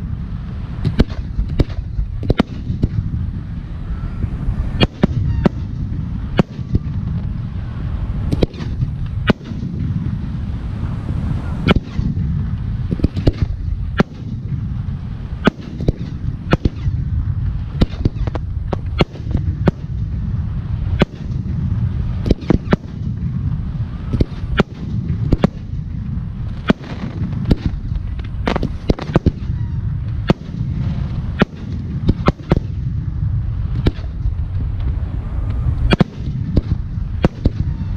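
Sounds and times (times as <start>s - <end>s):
low rumble: 0.0s - 37.9s
firework shells bursting: 15.4s - 20.2s, 24.1s - 32.9s, 35.5s - 37.9s.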